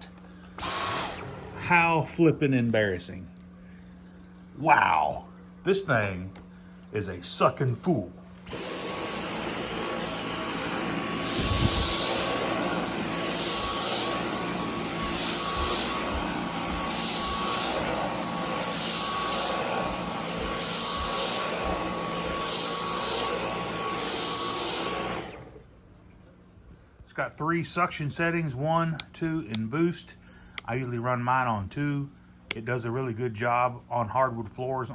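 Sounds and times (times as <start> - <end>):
vacuum motor whine: 0.1 - 2.2, 8.4 - 25.6.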